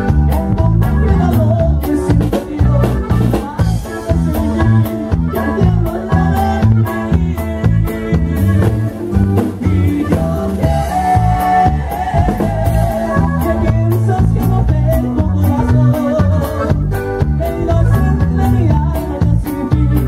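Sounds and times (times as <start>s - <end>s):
bass line: 0.0s - 20.0s
live band music: 0.0s - 20.0s
steady drum beat: 0.0s - 20.0s.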